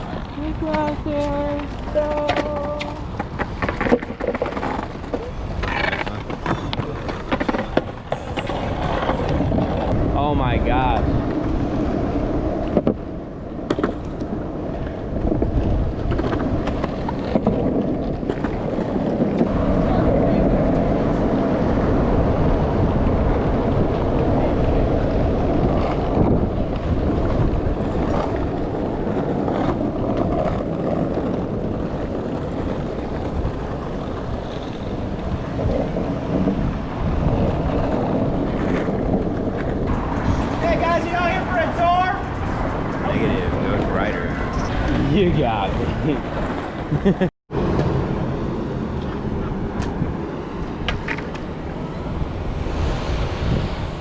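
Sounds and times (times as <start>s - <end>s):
skateboard wheels rolling on pavement: 0.0s - 54.0s
wind buffeting microphone: 0.0s - 54.0s
skateboard wheels knocking on cracks: 0.3s - 9.9s, 13.6s - 19.7s, 50.6s - 51.6s.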